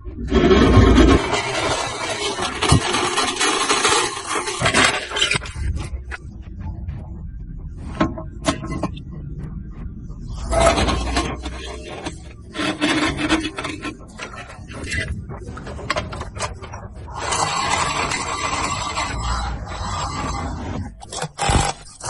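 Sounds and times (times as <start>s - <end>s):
electric motor gears grinding: 0.2s - 6.3s, 10.3s - 22.0s.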